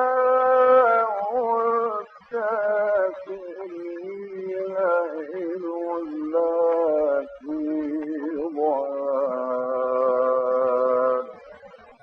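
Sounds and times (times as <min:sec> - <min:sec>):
man chanting melodically: 0:00.0 - 0:11.7.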